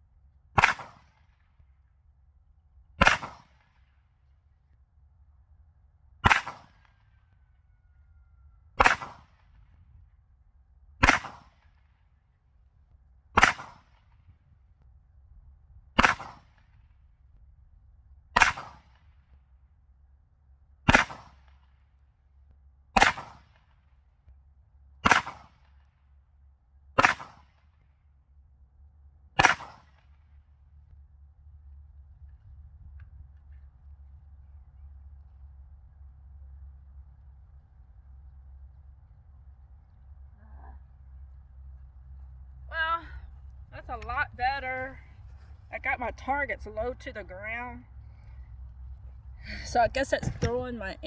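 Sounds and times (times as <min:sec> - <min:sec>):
gunshots: 0:00.6 - 0:01.2, 0:03.0 - 0:03.6, 0:06.2 - 0:06.8, 0:08.8 - 0:09.4, 0:11.0 - 0:11.6, 0:13.4 - 0:13.9, 0:16.0 - 0:16.6, 0:18.4 - 0:19.0, 0:20.9 - 0:21.4, 0:23.0 - 0:23.6, 0:25.0 - 0:25.6, 0:27.0 - 0:27.5, 0:29.4 - 0:30.0.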